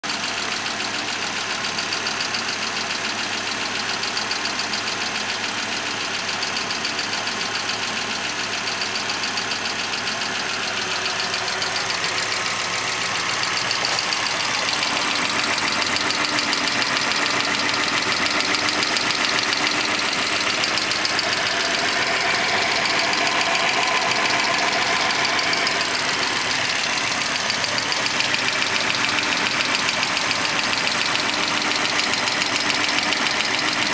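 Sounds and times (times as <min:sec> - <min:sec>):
car engine idling: 0:00.0 - 0:33.9
engine lifter tick: 0:08.7 - 0:33.9.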